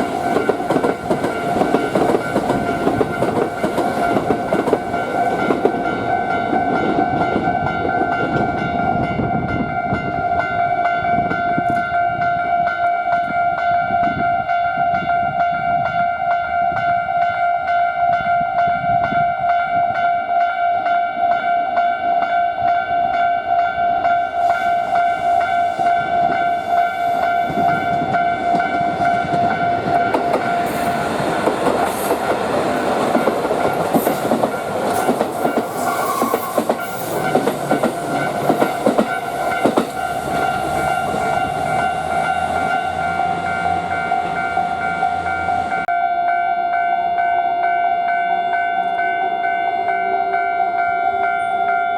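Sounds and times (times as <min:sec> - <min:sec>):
train wheels clacking over rail joints: 0:00.0 - 0:08.5, 0:27.5 - 0:42.1
level-crossing warning bell: 0:00.0 - 0:51.9.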